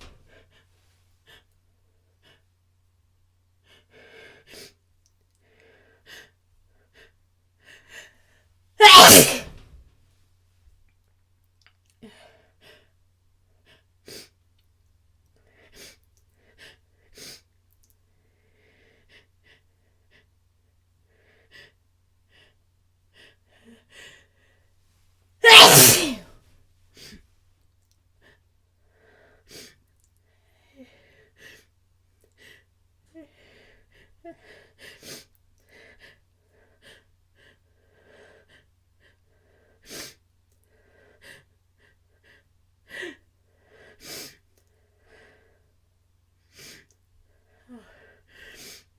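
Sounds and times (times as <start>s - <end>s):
person sneezing: 8.8s - 9.6s, 25.4s - 26.2s
catching breaths and sniffs: 29.1s - 29.8s, 43.6s - 45.7s, 46.5s - 46.9s, 47.5s - 48.9s.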